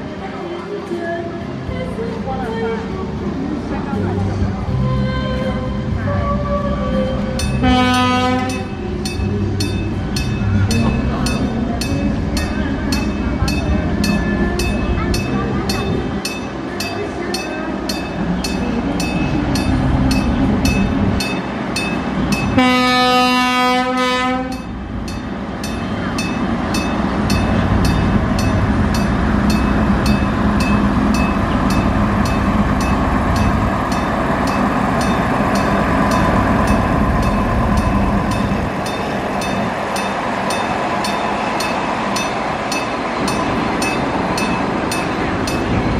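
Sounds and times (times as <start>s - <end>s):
passing train rumble: 0.0s - 45.9s
train horn: 7.6s - 8.7s, 22.6s - 24.7s.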